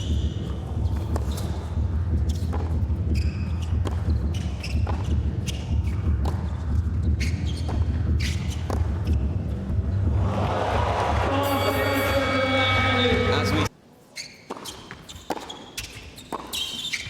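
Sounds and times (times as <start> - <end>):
shoes squeaking on hard court: 0.0 - 10.1, 11.4 - 17.0
tennis ball struck and bouncing: 0.7 - 9.6, 14.5 - 16.8.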